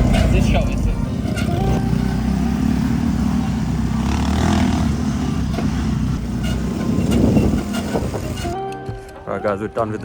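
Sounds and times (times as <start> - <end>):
buggy engine rumbling: 0.0 - 10.0.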